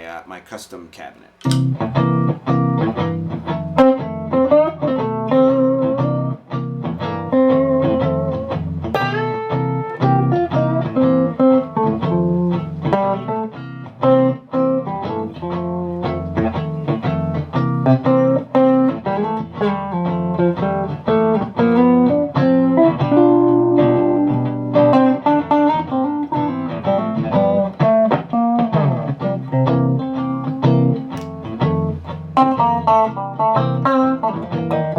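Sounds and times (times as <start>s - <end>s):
electric guitar chords: 1.4s - 34.9s
electric guitar notes: 1.4s - 34.9s.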